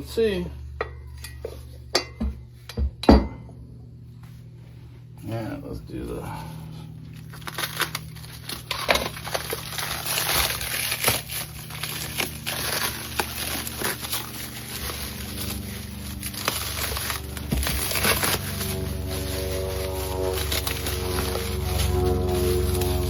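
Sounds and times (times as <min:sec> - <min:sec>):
packaging crinkling and crushing: 0:07.1 - 0:23.0.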